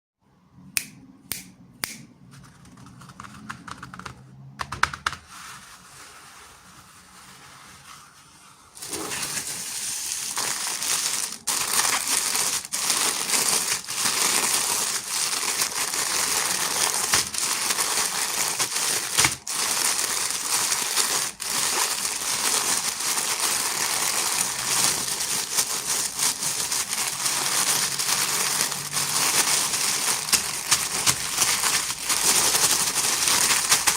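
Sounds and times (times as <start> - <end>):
sharp snaps: 0.8 - 2.1
packaging wrapper crinkling: 8.8 - 33.9
toy packaging clicks and tapping: 10.4 - 33.9.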